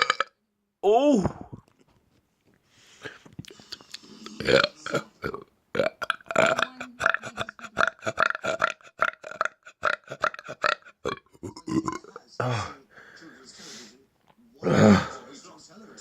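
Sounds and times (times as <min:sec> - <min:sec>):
man burping: 0:00.0 - 0:00.3, 0:04.2 - 0:12.7, 0:14.6 - 0:15.2.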